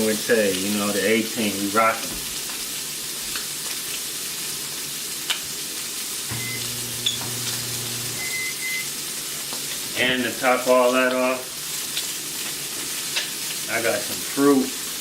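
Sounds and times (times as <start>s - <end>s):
meat sizzling in a pan: 0.0s - 15.0s
low hum: 6.3s - 8.4s.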